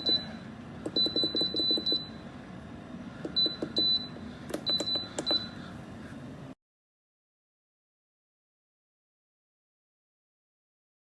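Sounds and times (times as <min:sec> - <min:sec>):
control panel beeping: 0:00.0 - 0:00.3, 0:00.9 - 0:02.2, 0:03.3 - 0:05.5.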